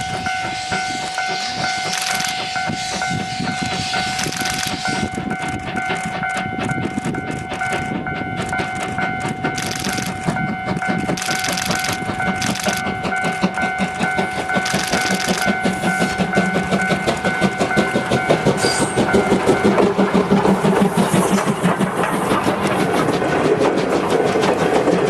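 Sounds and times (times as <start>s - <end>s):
level-crossing alarm pulsing: 0.0s - 19.8s
train wheels clattering: 0.0s - 25.0s
hiss bursts: 0.1s - 5.9s, 18.0s - 23.3s.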